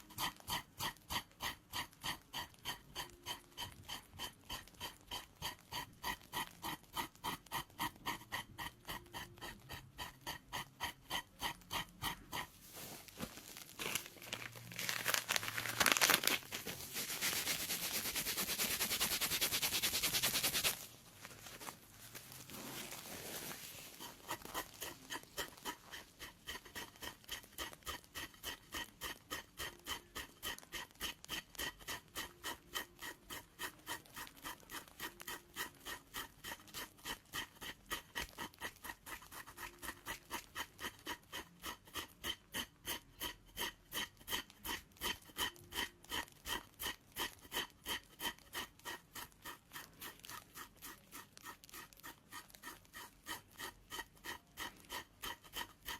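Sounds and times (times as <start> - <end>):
blade scraping skin: 0.0 - 20.9, 21.5 - 55.9.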